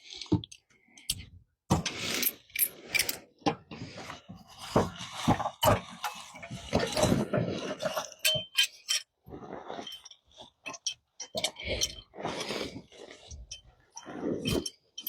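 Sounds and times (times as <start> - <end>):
hand tools clicking and clinking: 0.4 - 3.2, 7.8 - 9.1, 9.8 - 12.0, 14.4 - 15.0.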